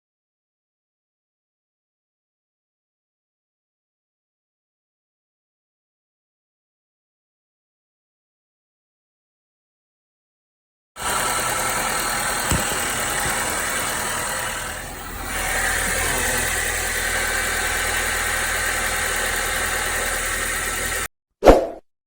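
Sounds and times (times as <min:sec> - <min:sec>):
car engine idling: 0:11.0 - 0:21.1.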